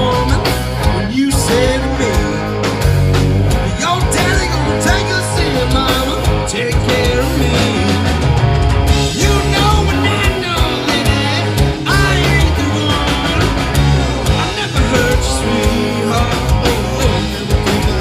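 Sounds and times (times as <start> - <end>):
rock band playing live: 0.0 - 18.0.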